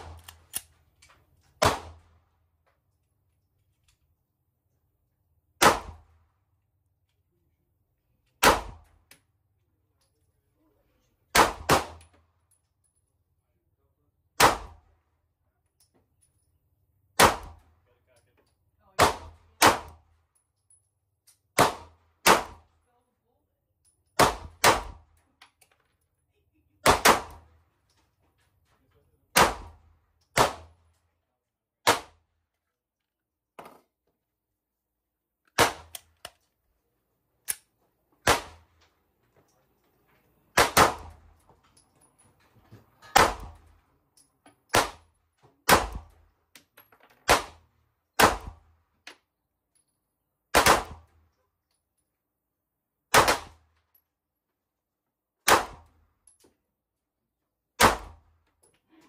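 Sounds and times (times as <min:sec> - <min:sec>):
pistol shots: 0:00.0 - 0:00.4, 0:01.6 - 0:02.1, 0:05.6 - 0:06.1, 0:08.4 - 0:08.9, 0:11.3 - 0:12.1, 0:14.4 - 0:14.9, 0:17.2 - 0:17.7, 0:19.0 - 0:20.0, 0:21.5 - 0:22.7, 0:24.2 - 0:25.2, 0:26.8 - 0:27.5, 0:29.3 - 0:30.8, 0:31.8 - 0:32.2, 0:35.5 - 0:36.1, 0:38.2 - 0:38.8, 0:40.5 - 0:41.3, 0:43.1 - 0:43.7, 0:44.7 - 0:46.2, 0:47.2 - 0:48.7, 0:50.5 - 0:51.1, 0:53.1 - 0:53.7, 0:55.4 - 0:56.0, 0:57.8 - 0:58.3.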